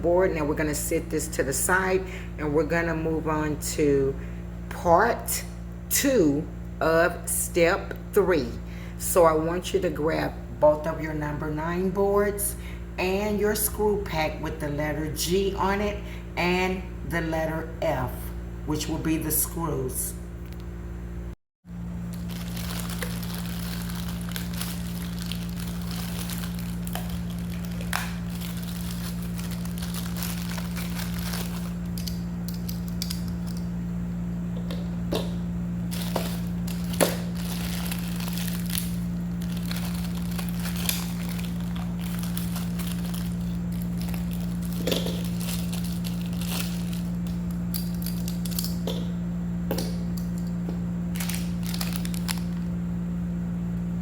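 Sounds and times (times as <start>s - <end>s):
low electrical hum: 0.0s - 54.0s
plastic screw packs crinkling: 22.1s - 33.6s, 35.9s - 48.8s, 51.1s - 52.6s.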